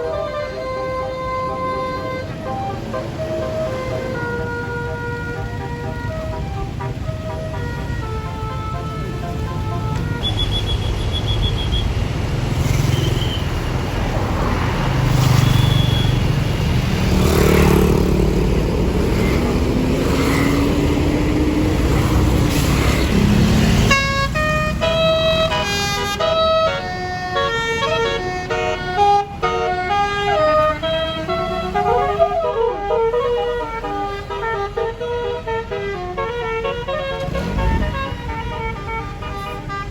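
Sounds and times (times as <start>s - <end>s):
musical air horn tune: 0.0s - 11.6s, 23.8s - 39.9s
bus engine running: 0.0s - 39.9s.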